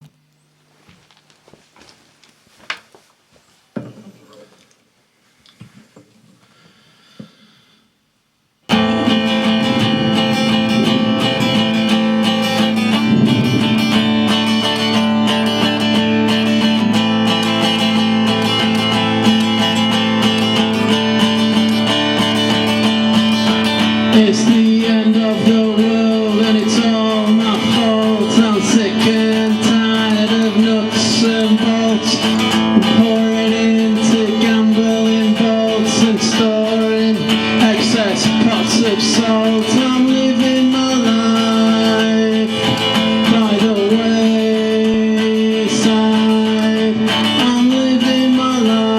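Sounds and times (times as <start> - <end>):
bluesy guitar playing: 8.7 - 48.9.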